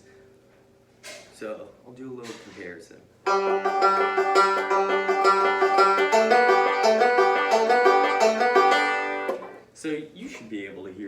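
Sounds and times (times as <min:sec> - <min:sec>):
banjo picking: 0:03.2 - 0:09.6.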